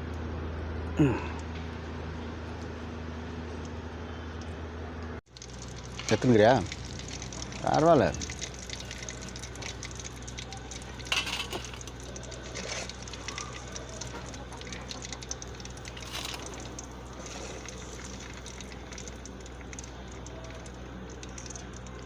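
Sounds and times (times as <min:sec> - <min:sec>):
food frying in oil crackle: 0:05.3 - 0:22.0.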